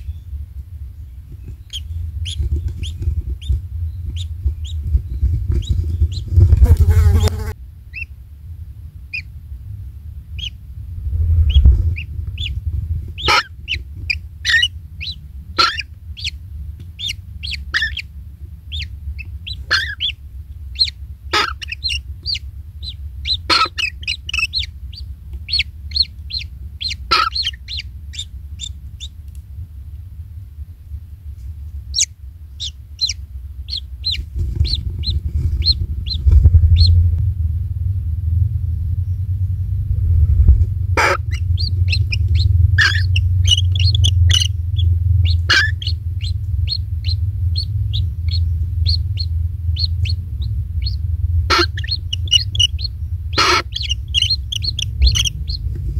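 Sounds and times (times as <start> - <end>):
steady low rumble: 0.0 - 55.9
high bird chirps: 17.0 - 18.1, 18.7 - 29.2, 31.9 - 37.0, 41.0 - 55.7
sharp clicking bird notes: 41.0 - 55.8.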